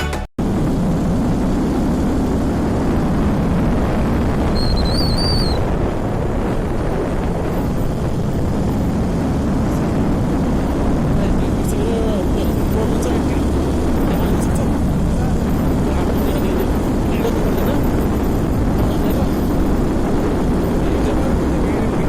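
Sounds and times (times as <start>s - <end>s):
wind rushing over microphone: 0.4s - 22.0s
high wavering whistle tone: 4.5s - 5.6s.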